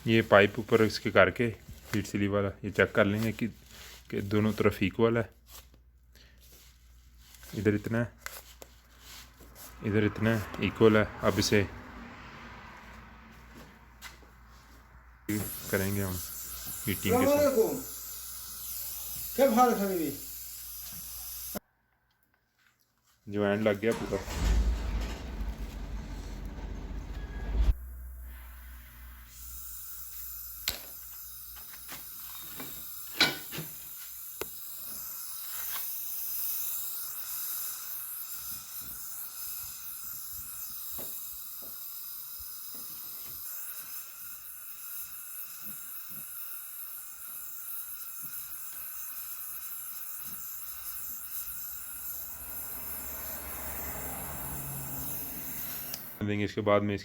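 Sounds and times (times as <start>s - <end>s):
heat gun hissing: 15.3s - 21.6s, 23.9s - 56.2s.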